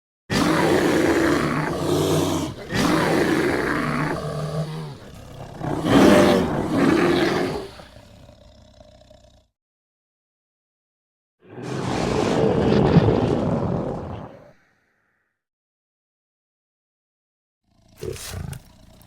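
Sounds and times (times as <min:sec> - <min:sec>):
bear roaring: 0:00.3 - 0:09.5, 0:11.4 - 0:14.6, 0:17.7 - 0:19.0.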